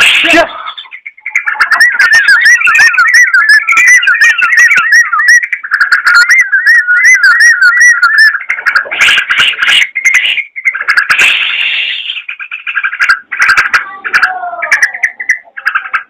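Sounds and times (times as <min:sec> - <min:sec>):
bulbul singing whistled notes: 0:00.3 - 0:08.6.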